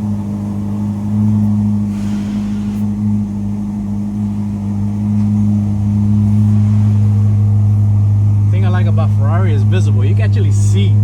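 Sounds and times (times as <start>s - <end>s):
car engine idling: 0.0s - 11.0s.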